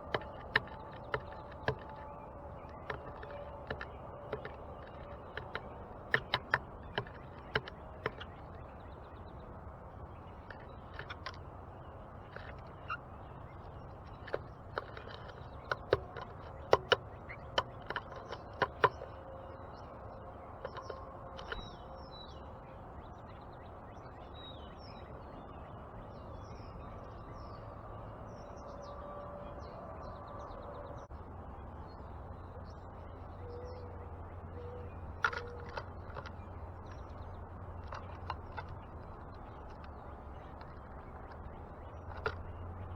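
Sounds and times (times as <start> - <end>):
sharp taps and clicks: 0.0 - 8.7, 13.6 - 19.2, 20.6 - 21.7.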